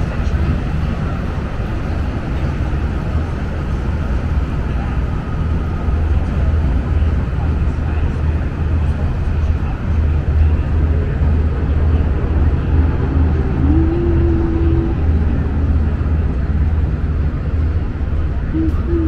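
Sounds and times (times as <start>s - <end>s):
boat engine low throbbing rumble: 0.0s - 19.0s.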